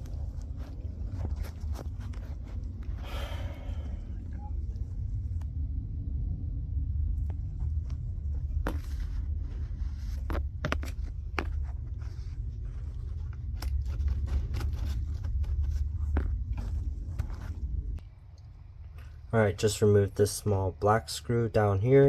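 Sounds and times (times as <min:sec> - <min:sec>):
steady low rumble: 0:00.0 - 0:22.0
parts and tools handled: 0:08.6 - 0:17.6.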